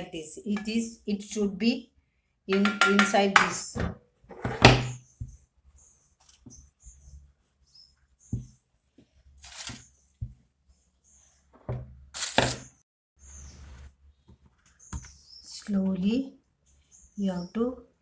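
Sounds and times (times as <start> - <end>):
kitchen items knocking on counter: 2.5 - 5.0.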